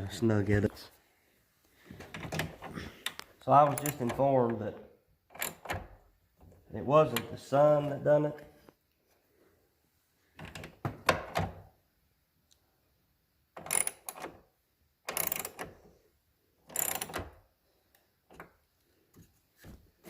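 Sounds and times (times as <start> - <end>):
ratchet wrench clicking: 15.1 - 15.6, 16.7 - 17.2.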